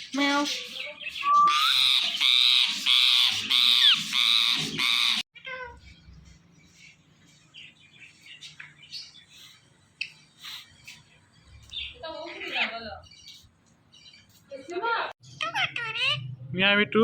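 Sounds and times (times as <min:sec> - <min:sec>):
parrot screeching squawks: 0:01.2 - 0:05.6.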